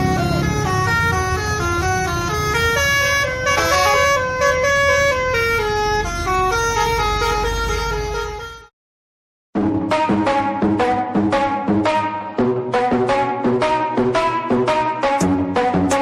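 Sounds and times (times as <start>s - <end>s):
multi-tone air horns playing tune: 0.0s - 8.7s.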